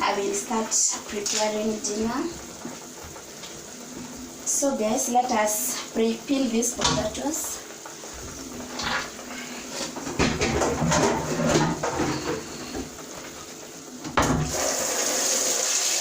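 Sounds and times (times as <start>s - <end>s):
tap running water: 0.0s - 16.0s.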